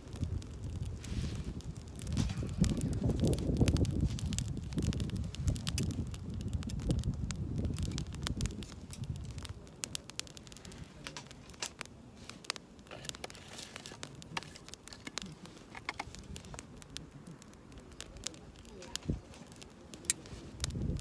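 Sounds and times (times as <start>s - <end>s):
wind rumble on microphone: 0.0s - 11.6s, 15.8s - 21.0s
campfire crackling and popping: 0.0s - 21.0s.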